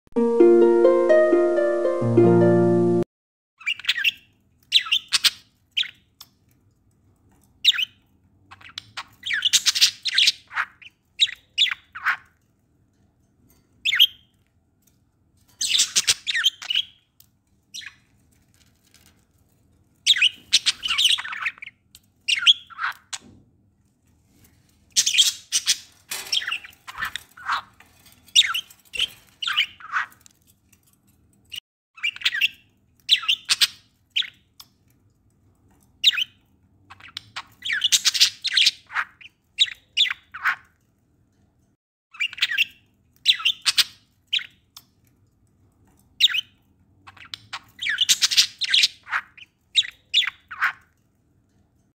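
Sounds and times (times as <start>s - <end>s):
budgerigars chirping and squawking: 3.6s - 6.1s, 7.6s - 12.4s, 15.6s - 17.0s, 20.1s - 23.3s, 24.9s - 27.8s, 28.4s - 30.2s, 32.0s - 34.4s, 36.0s - 40.7s, 42.1s - 44.6s, 46.2s - 51.0s.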